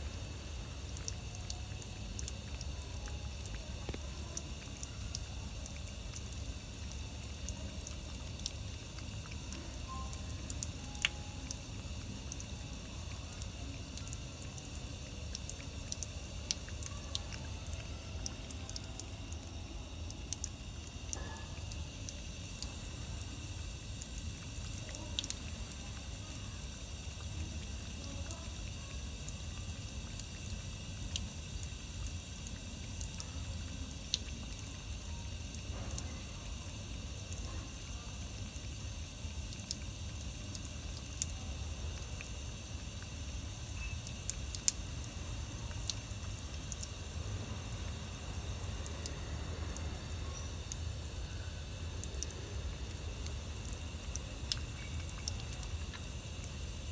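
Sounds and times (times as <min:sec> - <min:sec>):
small drips and clicks: 0:00.0 - 0:56.9
water trickling: 0:00.0 - 0:56.9.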